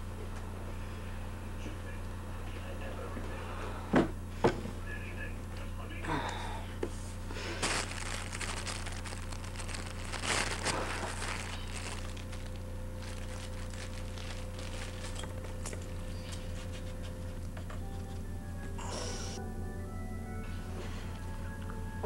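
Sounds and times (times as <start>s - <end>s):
steady low hum: 0.0s - 22.0s
rustling: 7.6s - 17.6s.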